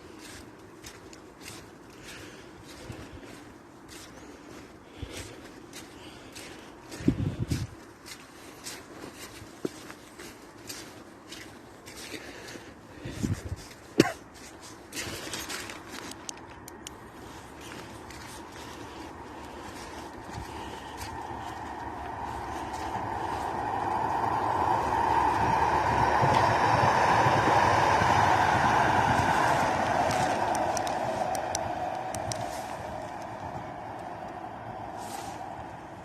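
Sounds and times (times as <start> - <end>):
soft footsteps: 0.0 - 27.6
distant traffic hum: 0.0 - 36.0.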